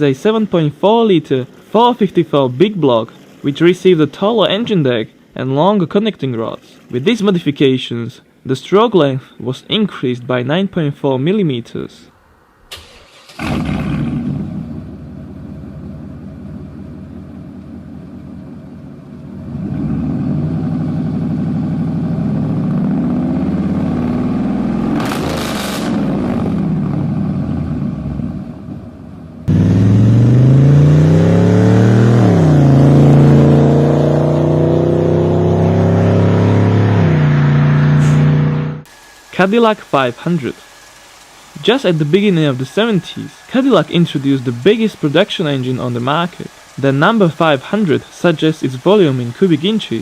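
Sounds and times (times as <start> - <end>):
vehicle engine running: 13.4 - 39.7.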